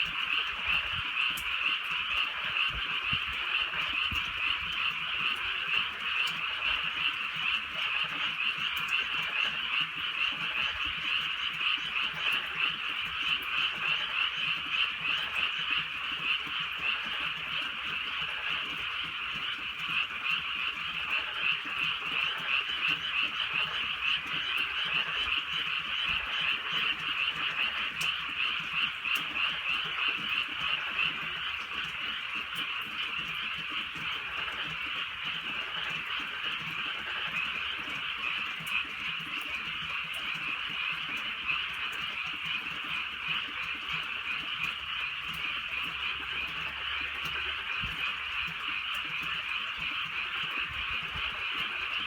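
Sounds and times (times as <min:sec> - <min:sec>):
chorus of frogs croaking: 0:00.0 - 0:52.0.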